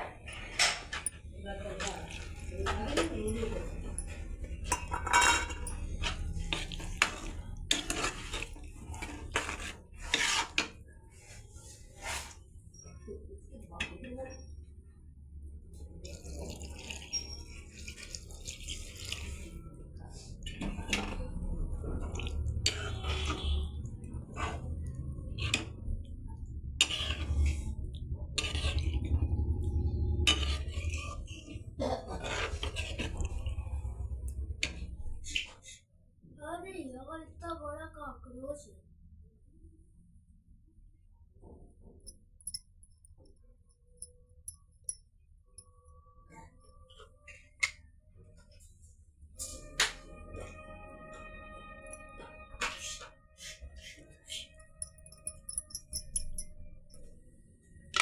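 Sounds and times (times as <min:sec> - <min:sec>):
metal spoon scraping a pan: 0:01.8 - 0:10.8, 0:42.4 - 0:42.6.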